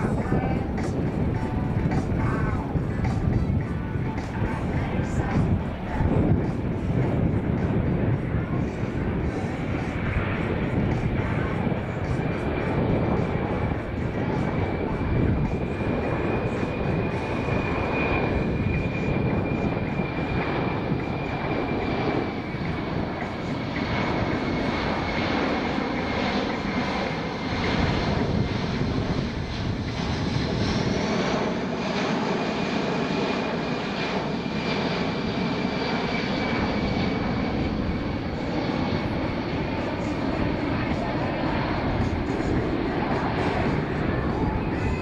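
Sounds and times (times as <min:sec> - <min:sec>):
jet engines in flight: 0:00.0 - 0:45.0.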